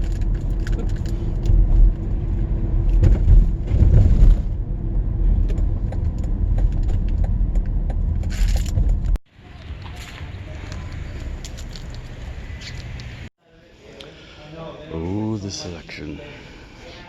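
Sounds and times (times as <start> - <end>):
road and engine rumble: 0.0 - 13.3.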